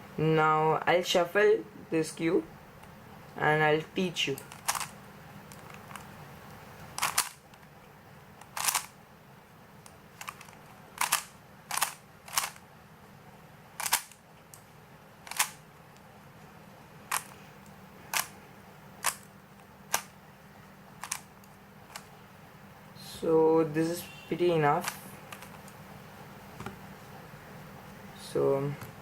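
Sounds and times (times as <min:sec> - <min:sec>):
puzzle cube turning clicks: 0:04.3 - 0:06.1, 0:06.9 - 0:07.7, 0:08.4 - 0:09.0, 0:09.8 - 0:12.6, 0:13.8 - 0:14.6, 0:15.3 - 0:15.6, 0:17.1 - 0:18.4, 0:19.0 - 0:19.3, 0:19.9 - 0:20.1, 0:21.0 - 0:22.1, 0:24.8 - 0:25.8.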